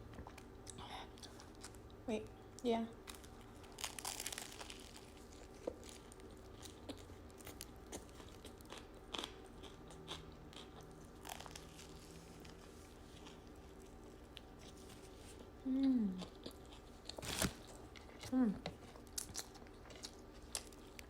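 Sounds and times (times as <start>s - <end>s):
close-up chewing: 3.0s - 15.6s, 16.2s - 21.0s
crunchy bite into sandwich: 3.6s - 12.5s.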